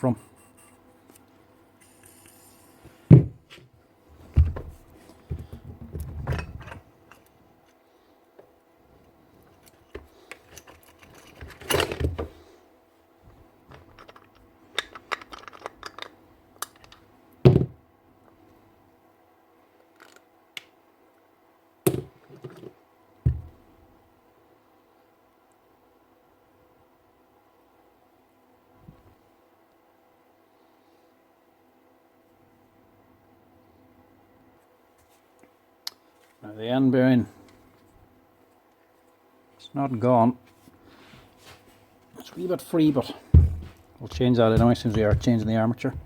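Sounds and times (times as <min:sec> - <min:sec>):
gearbox parts and tools clunking: 0:43.3 - 0:46.0.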